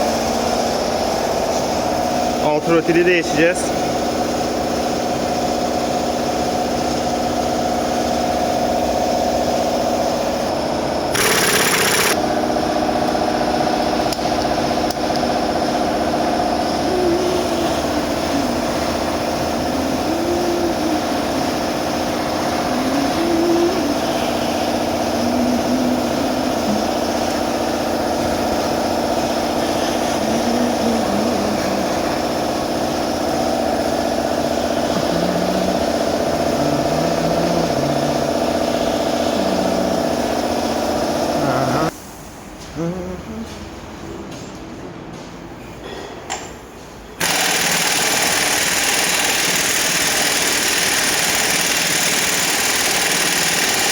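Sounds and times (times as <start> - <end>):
machinery humming: 0.0 - 42.0.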